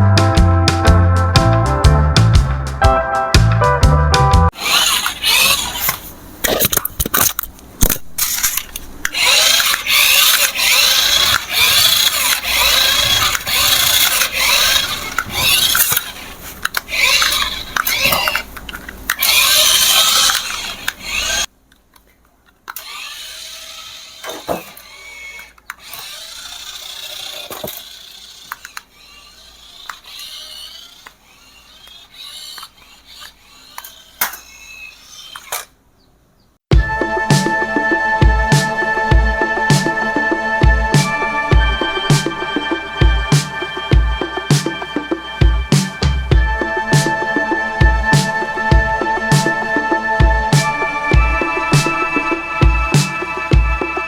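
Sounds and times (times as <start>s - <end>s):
toy electric motor whirring: 4.5s - 21.5s, 22.7s - 35.8s.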